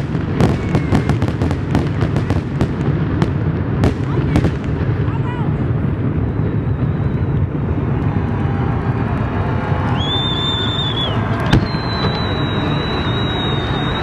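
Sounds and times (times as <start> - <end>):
firework high whistle: 0.0 - 2.3, 6.0 - 14.0
fireworks low rumble: 0.0 - 14.0
firework sharp bang: 9.8 - 13.9.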